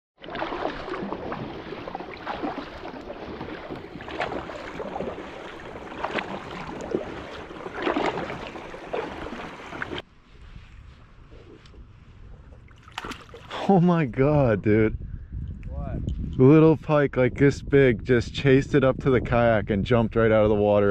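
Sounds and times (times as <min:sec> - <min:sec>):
water splashing around kayak: 0:00.2 - 0:13.8.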